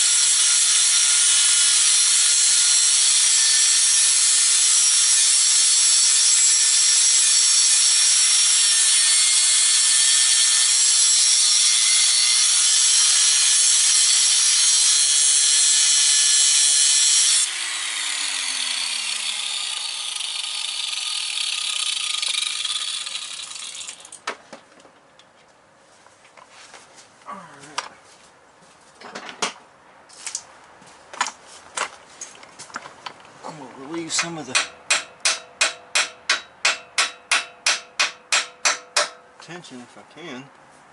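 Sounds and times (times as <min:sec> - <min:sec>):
power tool grinding metal: 0:00.0 - 0:24.2.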